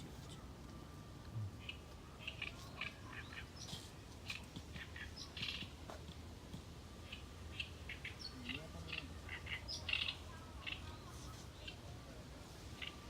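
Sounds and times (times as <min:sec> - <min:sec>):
faint steady alarm tone: 0:00.0 - 0:03.2
reed warbler singing: 0:01.6 - 0:05.8, 0:07.0 - 0:11.8.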